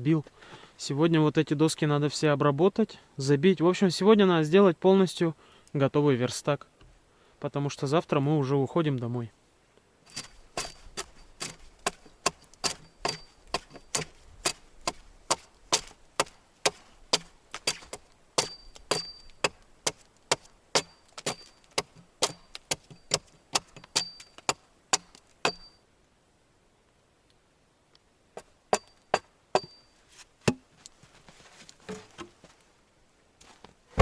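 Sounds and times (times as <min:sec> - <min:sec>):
steel tool striking wood: 0:10.1 - 0:25.8, 0:28.7 - 0:30.6.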